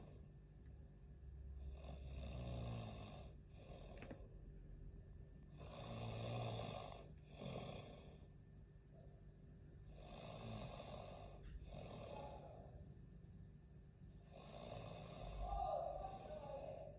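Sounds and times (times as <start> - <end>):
man snoring: 1.6 - 4.2, 5.6 - 8.2, 9.9 - 12.7, 14.2 - 16.8.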